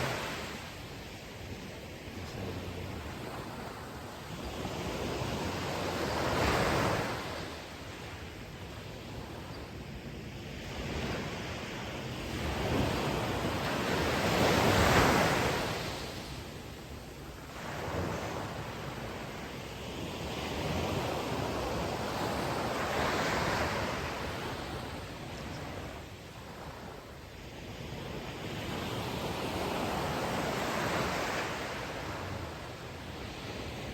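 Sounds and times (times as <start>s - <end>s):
ocean waves breaking on shore: 0.0s - 33.9s.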